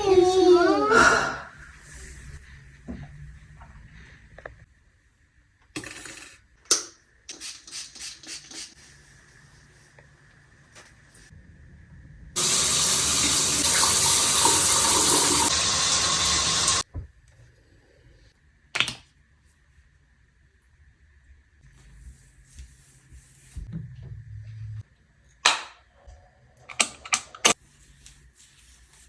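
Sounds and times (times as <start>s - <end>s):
water running from a tap: 12.4s - 16.9s.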